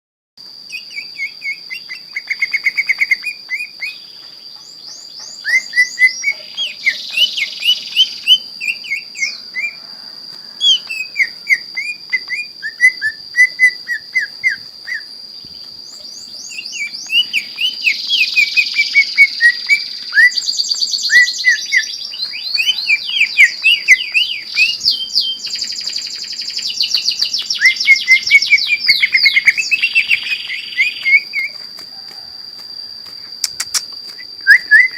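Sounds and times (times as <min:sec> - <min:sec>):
bird singing whistled notes: 0:00.7 - 0:32.4, 0:33.4 - 0:34.9
bird chatter: 0:00.8 - 0:09.8, 0:13.8 - 0:32.4.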